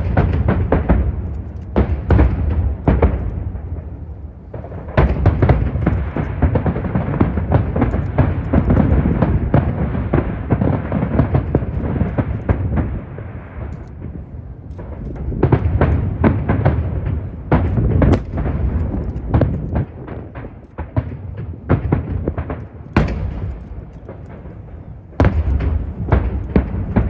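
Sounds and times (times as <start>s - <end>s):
fireworks bangs and crackles: 0.0s - 27.0s
deep rumble: 11.2s - 20.7s.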